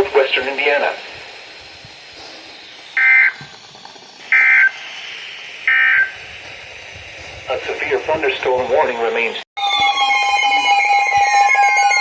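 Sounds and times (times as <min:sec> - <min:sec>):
faint radio hiss: 0:00.0 - 0:01.6
two-tone digital data bursts: 0:02.8 - 0:03.4, 0:04.3 - 0:04.8, 0:05.6 - 0:06.2.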